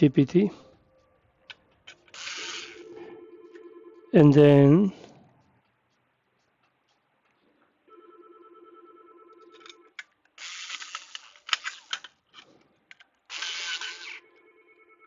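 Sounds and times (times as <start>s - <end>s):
pulsing electronic ringing tone: 2.4s - 4.3s, 7.9s - 9.9s, 14.2s - 15.0s.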